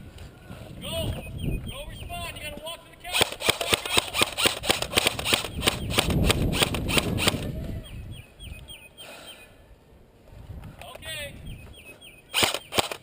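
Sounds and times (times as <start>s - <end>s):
bird chirping: 1.1s - 2.5s, 5.4s - 6.2s, 7.7s - 9.6s, 11.4s - 12.9s
airsoft guns firing: 3.1s - 7.4s, 12.3s - 13.0s.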